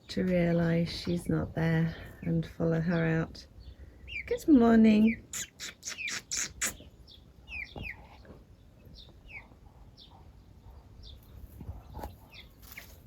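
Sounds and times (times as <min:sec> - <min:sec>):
chicks peeping: 0:00.2 - 0:13.0.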